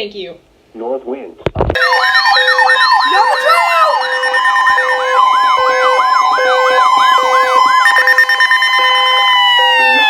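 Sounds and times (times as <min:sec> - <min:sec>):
steady buzzing tones: 0:01.8 - 0:09.7
on-off beep: 0:01.8 - 0:10.0
siren yelp: 0:01.8 - 0:10.0
steady alarm tone: 0:01.8 - 0:10.0.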